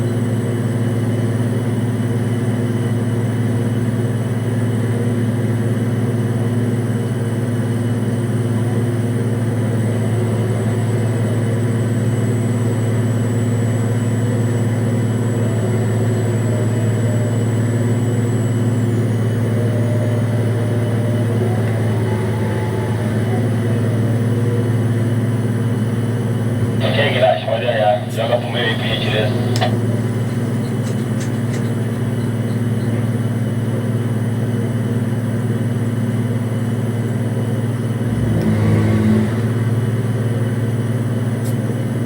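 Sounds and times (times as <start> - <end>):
crane machinery drone: 0.0 - 42.0
faint whine: 8.6 - 35.4.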